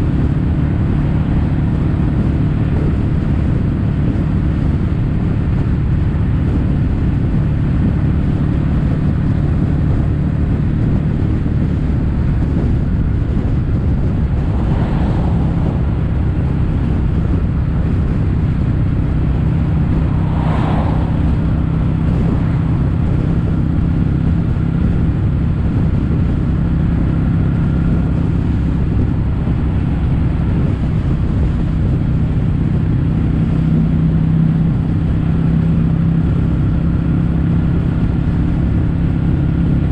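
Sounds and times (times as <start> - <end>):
motorcycle engine cruising: 0.0 - 39.9.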